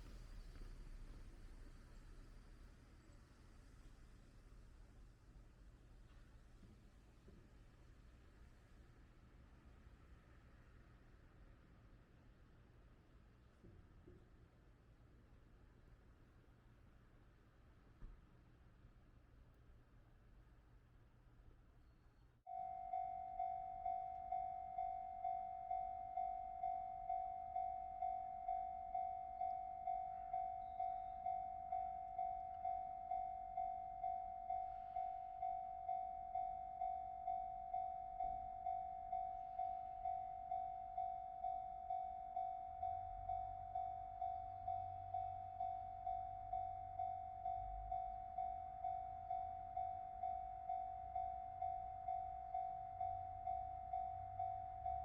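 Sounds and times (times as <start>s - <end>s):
level crossing warning bell: 22.5s - 55.0s.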